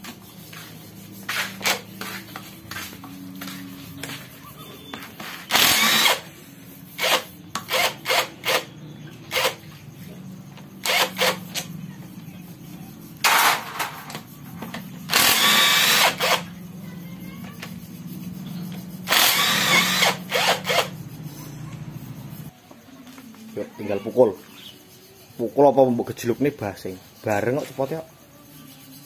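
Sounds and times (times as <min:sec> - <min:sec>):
power tool bursts: 0:05.5 - 0:06.3, 0:07.0 - 0:08.7, 0:09.3 - 0:09.6, 0:10.8 - 0:11.4, 0:15.1 - 0:16.5, 0:19.0 - 0:20.9.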